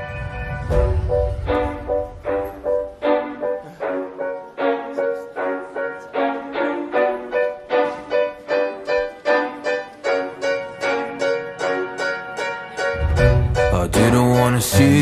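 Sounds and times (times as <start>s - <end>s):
repeating melody of short notes: 12.9s - 15.0s.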